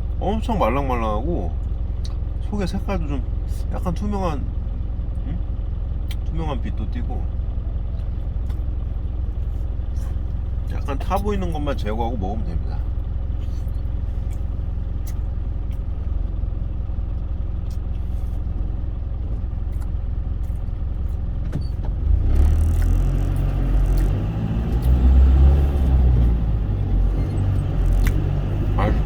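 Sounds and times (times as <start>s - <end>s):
truck engine and road noise: 0.0s - 29.0s.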